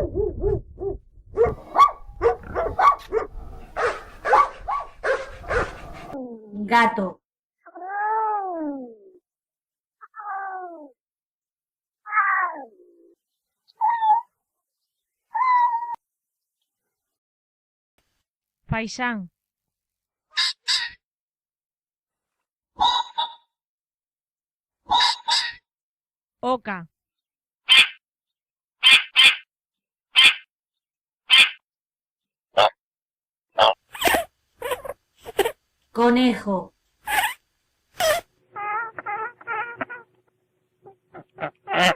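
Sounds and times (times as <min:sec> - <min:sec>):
goose honking: 0:41.4 - 0:41.9.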